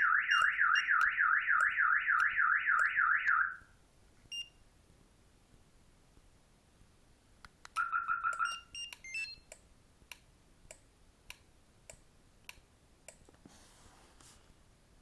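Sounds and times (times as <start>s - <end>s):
car alarm beeps: 0.0s - 3.6s, 7.8s - 9.5s
higher stepped alarm tones: 0.0s - 3.6s.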